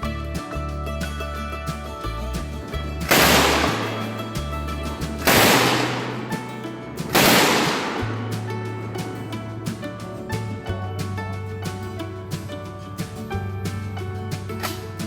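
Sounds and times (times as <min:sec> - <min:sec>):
music with steady bass line: 0:00.0 - 0:15.0
loud ringing bangs: 0:05.1 - 0:08.3.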